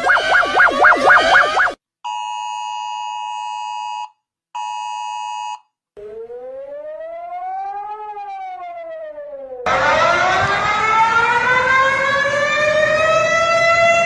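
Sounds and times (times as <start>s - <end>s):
rising and falling siren: 0.0s - 1.8s, 6.0s - 14.0s
two-tone attention signal: 0.0s - 1.8s.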